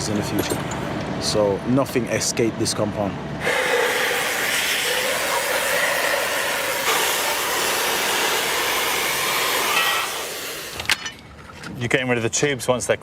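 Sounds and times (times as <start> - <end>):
metal cutting hiss: 3.4 - 11.0.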